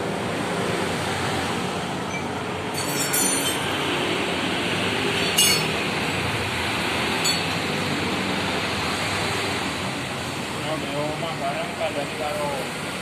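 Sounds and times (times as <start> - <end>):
steady noisy hum: 0.0 - 13.0
light metallic clinks: 2.1 - 3.7, 5.2 - 5.7, 7.2 - 7.7.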